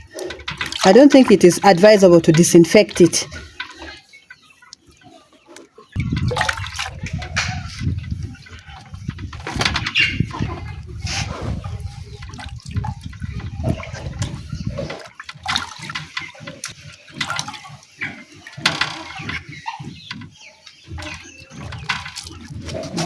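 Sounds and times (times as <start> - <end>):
rushing water: 0.0 - 3.9
water sloshing and splashing: 0.0 - 23.0.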